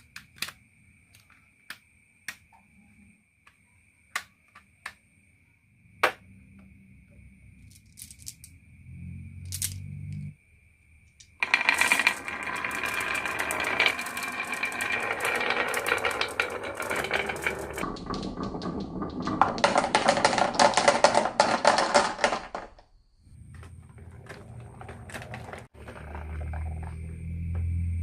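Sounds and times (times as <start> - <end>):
marbles rattling down wooden run: 11.3 - 22.8, 23.5 - 26.8.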